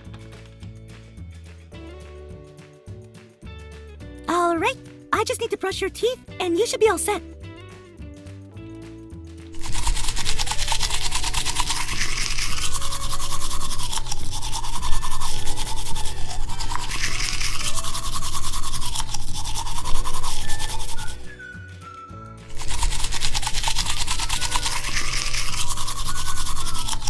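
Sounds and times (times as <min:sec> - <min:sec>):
toothbrush scrubbing rapidly: 0:09.6 - 0:21.4, 0:22.5 - 0:27.0.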